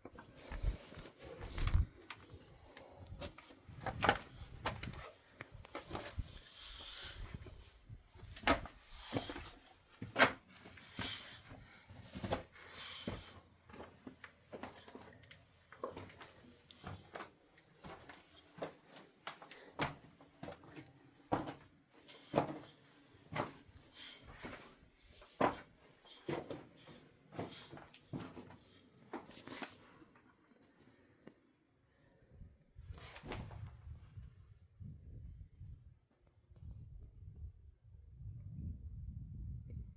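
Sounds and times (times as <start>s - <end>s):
footsteps on stony ground: 0.0s - 15.0s.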